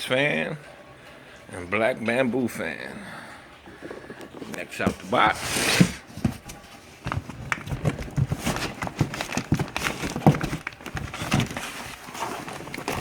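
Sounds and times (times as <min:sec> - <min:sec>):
cardboard packaging knocks and rustling: 0:04.8 - 0:13.0.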